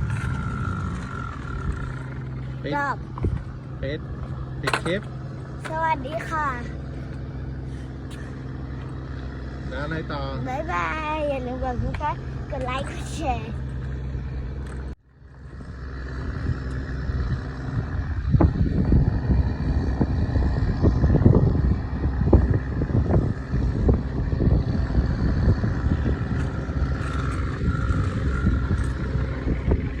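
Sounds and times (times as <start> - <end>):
low thumps: 0.0 - 6.0
low vehicle rumble: 0.0 - 30.0.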